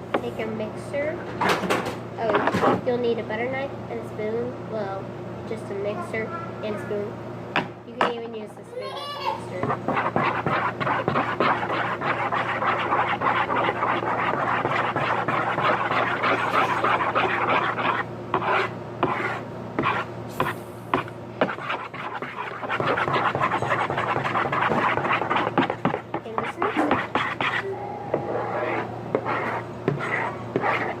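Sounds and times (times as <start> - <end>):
spoon scraping in a bowl: 9.6 - 20.1, 21.4 - 31.0.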